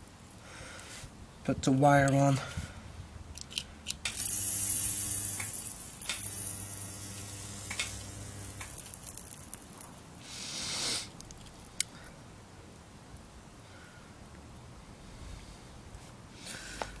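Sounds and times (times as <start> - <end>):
solder and flux sizzling: 4.1 - 10.2
short loud hiss: 10.2 - 11.2.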